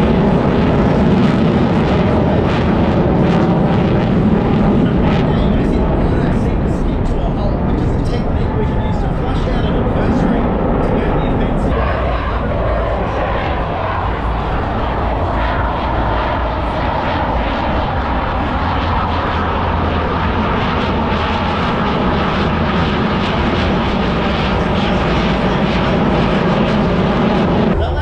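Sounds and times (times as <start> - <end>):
jet engines rushing: 0.0 - 28.0.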